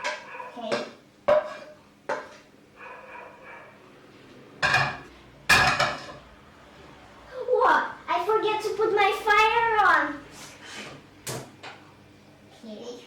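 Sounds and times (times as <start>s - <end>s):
metal cookware clinking: 4.6s - 6.3s.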